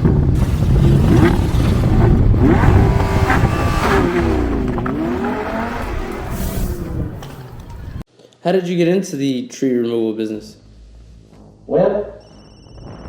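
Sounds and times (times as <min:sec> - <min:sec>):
car engine revving: 0:00.0 - 0:08.0.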